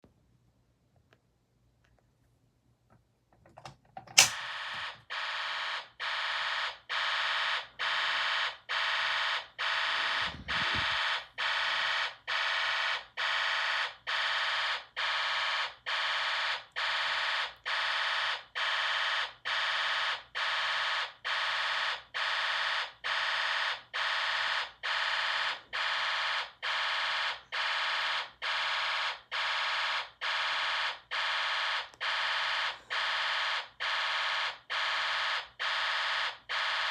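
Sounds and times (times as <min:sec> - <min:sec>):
sharp click: 0:04.0 - 0:04.4
fire alarm buzzing: 0:04.1 - 0:36.9.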